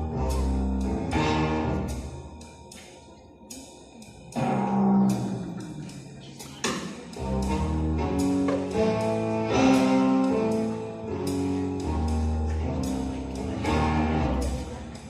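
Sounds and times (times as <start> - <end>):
sustained melodic notes: 0.0 - 15.0
strong bass line: 7.2 - 14.9.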